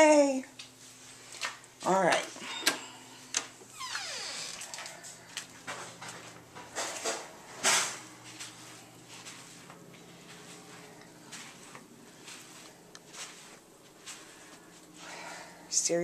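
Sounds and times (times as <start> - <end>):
rustling scuffs: 7.8 - 15.2.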